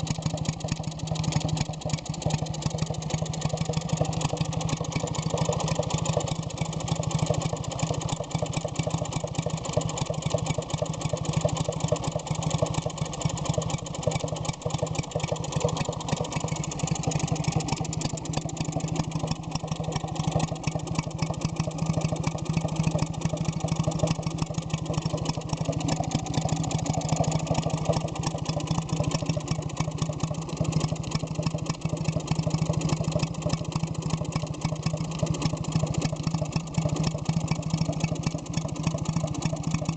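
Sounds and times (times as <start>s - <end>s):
stationary engine running: 0.0s - 39.9s.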